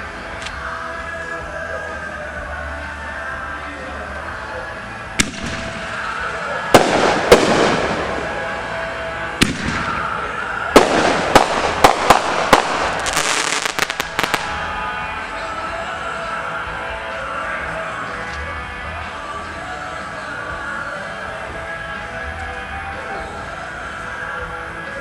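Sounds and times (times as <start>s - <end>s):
fireworks bangs and crackling: 5.2s - 14.8s.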